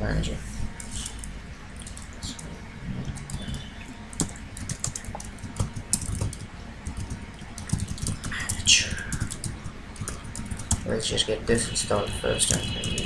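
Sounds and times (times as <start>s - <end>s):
typing on computer keyboard: 3.1s - 11.0s, 12.4s - 13.0s.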